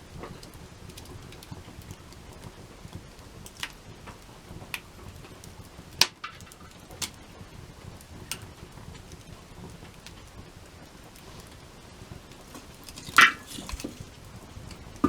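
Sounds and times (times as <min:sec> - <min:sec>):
campfire crackling: 0:00.0 - 0:15.0
sharp fire pops: 0:11.1 - 0:15.0.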